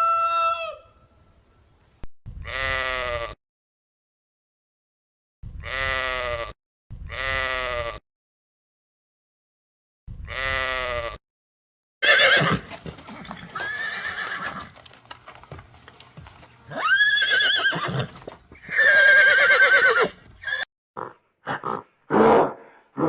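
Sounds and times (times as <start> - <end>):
farm animal bleating: 2.4 - 3.4, 5.6 - 8.0, 10.2 - 11.2.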